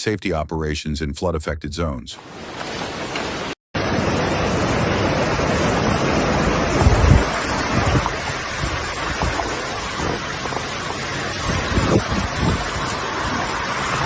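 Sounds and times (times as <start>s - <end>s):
rushing floodwater: 2.2s - 14.0s
wind on microphone: 5.6s - 13.7s.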